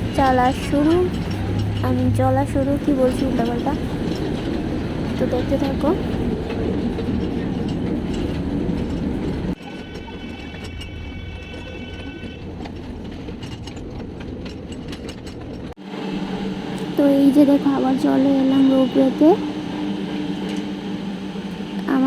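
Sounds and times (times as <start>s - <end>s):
toy train rumbling on track: 0.0s - 22.0s
steady high-pitched tone: 15.9s - 22.0s.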